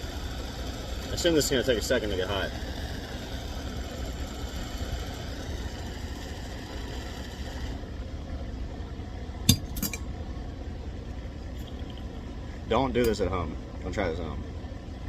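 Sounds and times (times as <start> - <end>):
butane torch hissing: 0.0 - 8.0.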